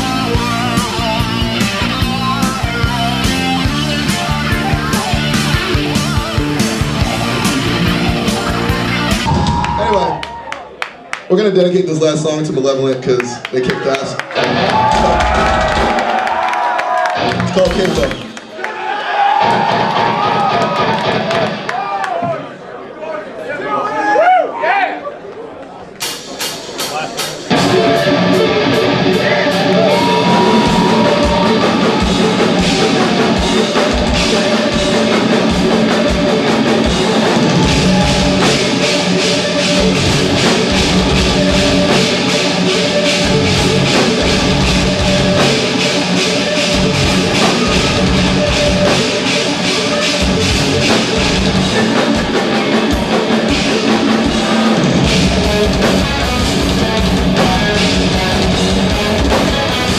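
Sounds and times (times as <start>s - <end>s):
distorted electric guitars: 0.0s - 9.7s, 26.4s - 59.9s
fast drum hits: 29.8s - 42.4s.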